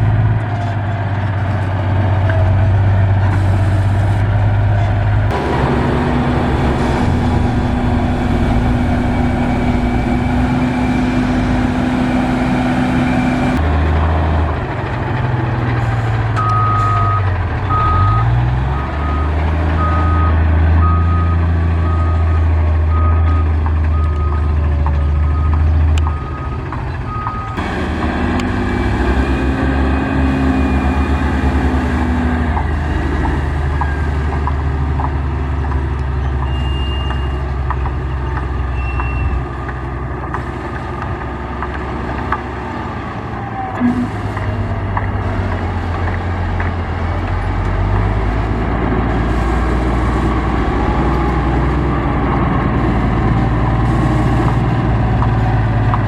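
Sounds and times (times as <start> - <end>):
heavy diesel machinery running: 0.0 - 56.0
reversing alarm beeping: 5.3 - 13.6, 16.4 - 27.7.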